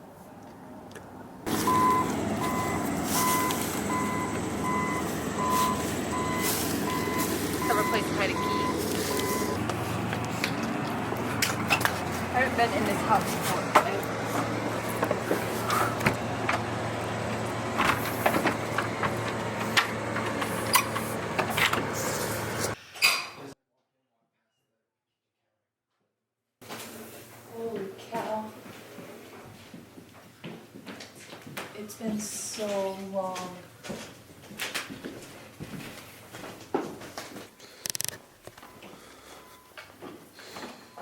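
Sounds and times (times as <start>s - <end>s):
vehicle reversing alarm beeping: 1.5s - 22.8s, 37.9s - 41.0s
sharp clicks and knocks: 37.8s - 38.7s.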